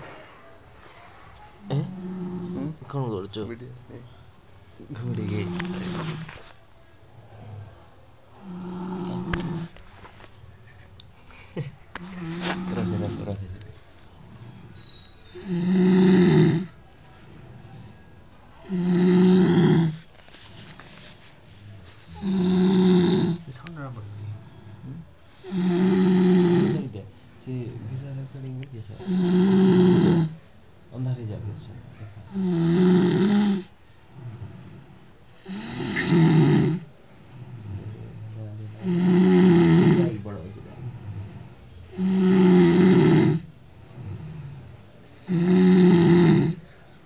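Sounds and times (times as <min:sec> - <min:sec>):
quiet breathing: 0:00.0 - 0:35.9, 0:36.8 - 0:47.0
person snoring: 0:01.7 - 0:02.8, 0:08.3 - 0:09.7, 0:12.0 - 0:13.4, 0:15.3 - 0:16.8, 0:18.5 - 0:20.0, 0:22.0 - 0:23.5, 0:24.1 - 0:28.1, 0:28.8 - 0:30.4, 0:32.3 - 0:46.7.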